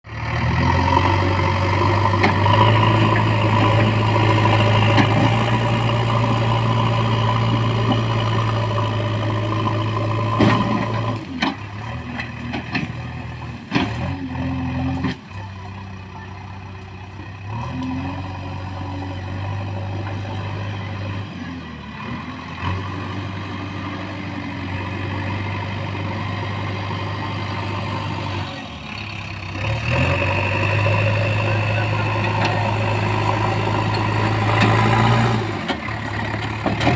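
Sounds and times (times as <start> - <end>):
backhoe diesel engine running: 0.0 - 36.9.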